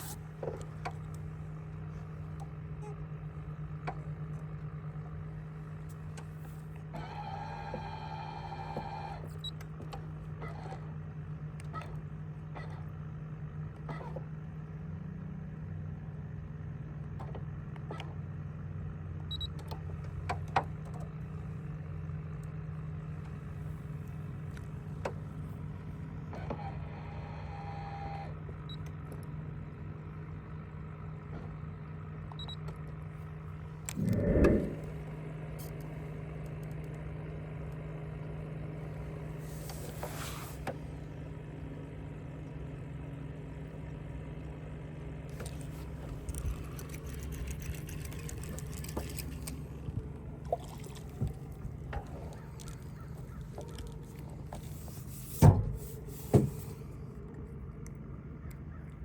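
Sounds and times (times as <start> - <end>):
boat motor humming: 0.0 - 15.1, 33.3 - 35.3, 37.9 - 59.0.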